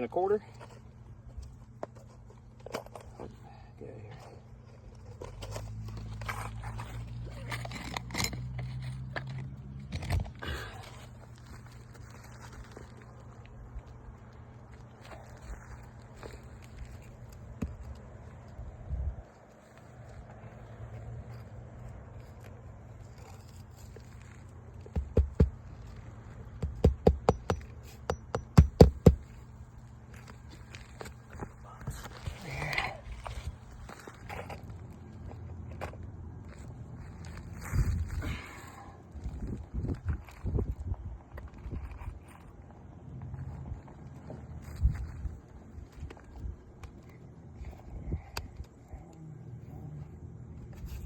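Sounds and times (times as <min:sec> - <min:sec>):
steady low hum: 0:00.0 - 0:41.2
scraping on roof shingle: 0:23.1 - 0:29.5
hammer striking nails: 0:24.9 - 0:25.6, 0:26.6 - 0:29.3.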